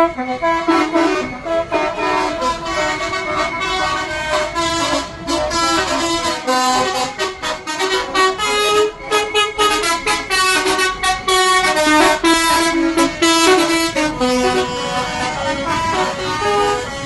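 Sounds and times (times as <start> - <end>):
bus horns playing melodies: 0.0 - 17.0.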